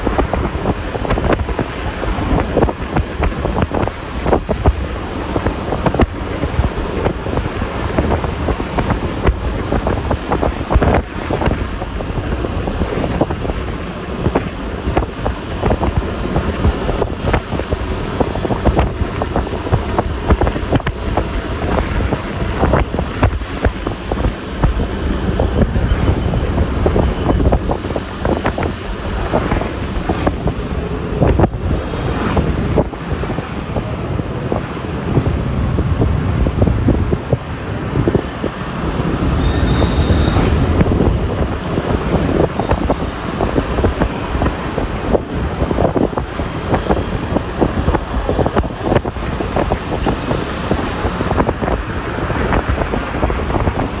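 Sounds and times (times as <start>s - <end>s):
road noise: 0.0s - 54.0s
wind buffeting microphone: 0.0s - 54.0s
scooter engine: 4.4s - 52.7s.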